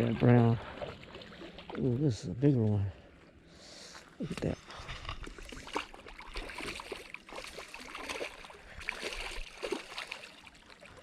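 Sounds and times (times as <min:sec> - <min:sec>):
water splashing and trickling: 0:00.0 - 0:11.0.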